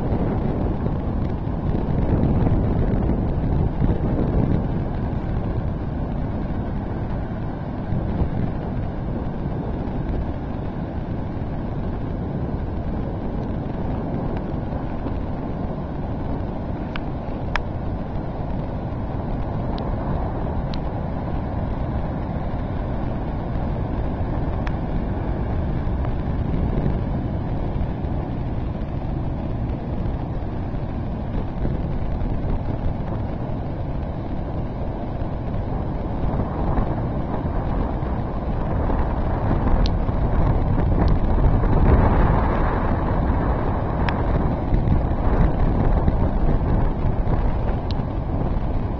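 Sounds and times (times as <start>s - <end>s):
surf on a beach: 0.0s - 48.9s
wind buffeting microphone: 0.0s - 48.9s
wind rushing: 0.0s - 48.9s.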